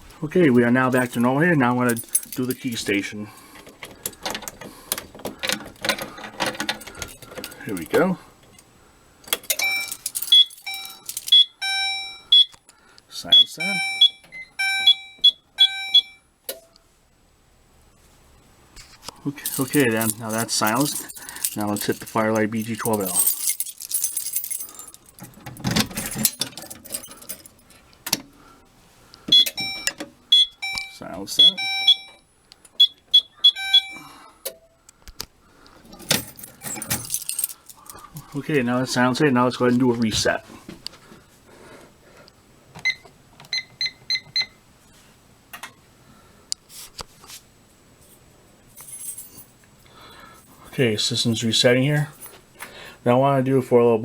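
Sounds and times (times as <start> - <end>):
fire alarm beeps: 9.5 - 12.6, 13.3 - 16.3, 29.3 - 34.2, 42.8 - 44.6
pull station rattling: 19.4 - 27.5, 36.0 - 38.0.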